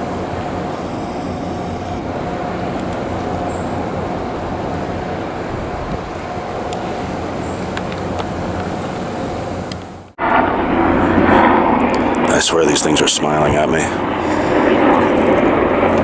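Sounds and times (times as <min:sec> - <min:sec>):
faint steady tone: 0:00.0 - 0:05.4
traffic rumble: 0:00.0 - 0:16.0.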